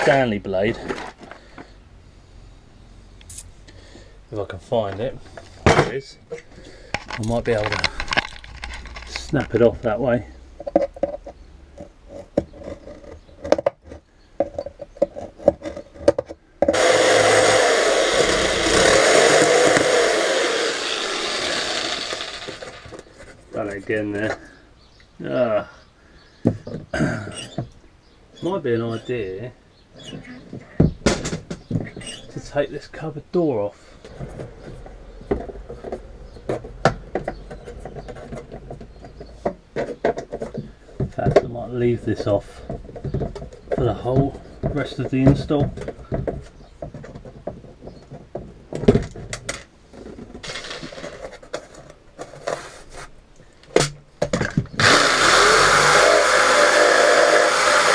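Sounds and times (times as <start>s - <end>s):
taps and scrapes on wood: 10.6s - 16.8s, 34.0s - 41.6s
electric jigsaw cutting wood: 16.7s - 23.0s, 50.4s - 51.0s, 54.8s - 57.9s.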